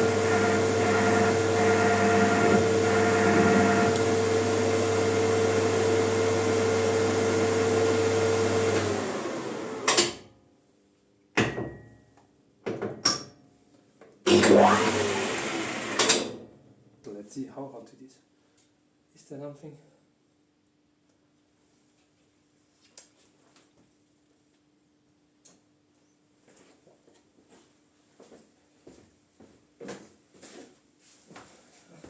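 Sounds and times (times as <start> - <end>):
lathe running: 0.0 - 9.9, 14.3 - 16.4.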